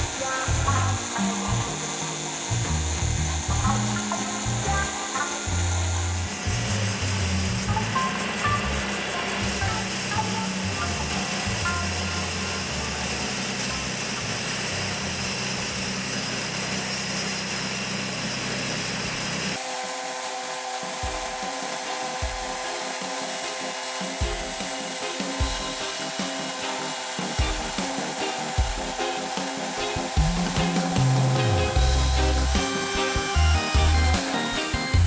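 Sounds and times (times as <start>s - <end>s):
music with slow beat: 0.0s - 13.6s, 21.0s - 35.0s
band sawmill cutting: 0.0s - 35.0s.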